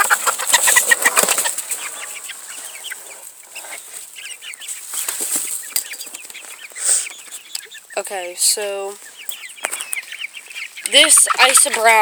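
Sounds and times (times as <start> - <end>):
rustling and scuffling: 0.0 - 7.6
chickens clucking: 0.0 - 12.0.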